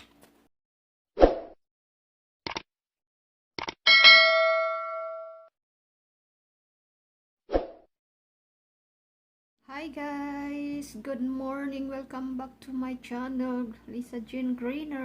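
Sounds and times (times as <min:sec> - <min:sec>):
bright metallic ding: 0:03.9 - 0:05.5.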